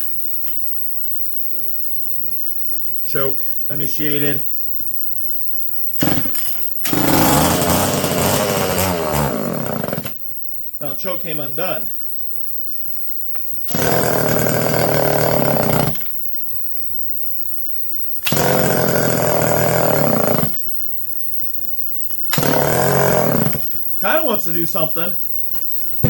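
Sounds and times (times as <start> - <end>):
chainsaw engine firing briefly: 6.0 - 10.2, 13.7 - 16.0, 18.2 - 20.5, 22.3 - 23.7.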